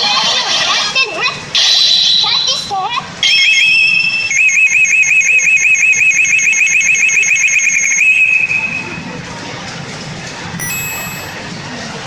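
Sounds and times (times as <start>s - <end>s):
electronic rising beeps: 10.6s - 11.4s
held electronic tone: 10.6s - 11.4s.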